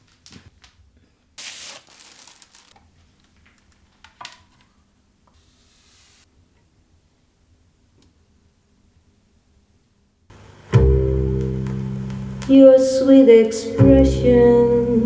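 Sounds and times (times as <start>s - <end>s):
soft hiss: 0.0s - 13.5s
loud rustle: 1.4s - 3.8s
music: 10.3s - 15.0s.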